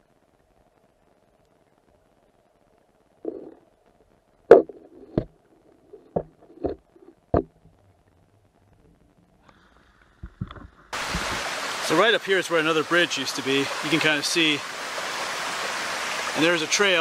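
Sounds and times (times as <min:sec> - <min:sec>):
muffled underwater knocks: 0:06.1 - 0:07.6.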